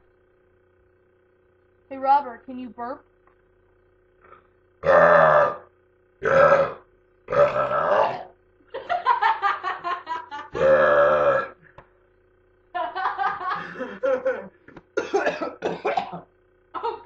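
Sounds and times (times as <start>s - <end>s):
young man burping loudly: 4.8s - 8.3s, 10.5s - 11.6s, 13.6s - 16.2s.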